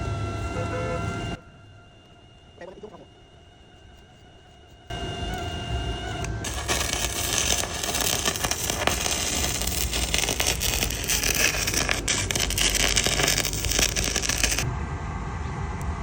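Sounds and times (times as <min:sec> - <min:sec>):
welding arc crackling: 0:04.9 - 0:14.7.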